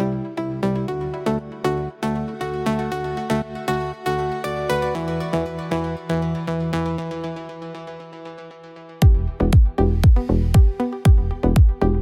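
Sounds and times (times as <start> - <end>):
tropical house music: 9.0 - 12.0.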